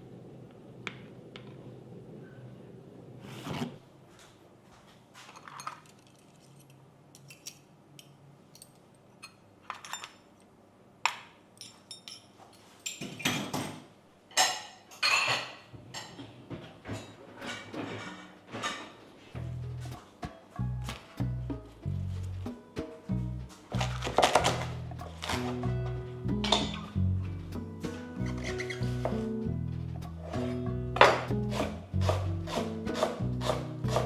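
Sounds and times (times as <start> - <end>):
dishes and utensils clinking: 11.6 - 27.0.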